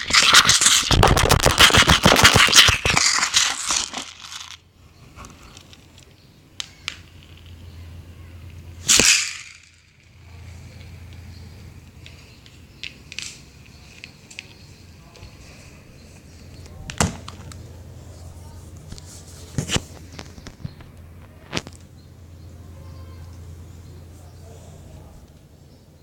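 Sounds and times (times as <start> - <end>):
sharp cracks: 0.0 - 4.6, 5.2 - 14.6, 16.4 - 17.8, 18.8 - 22.1.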